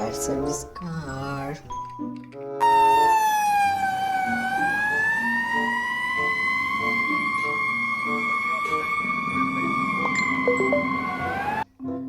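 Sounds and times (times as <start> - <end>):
fire engine siren wailing: 2.6 - 11.7.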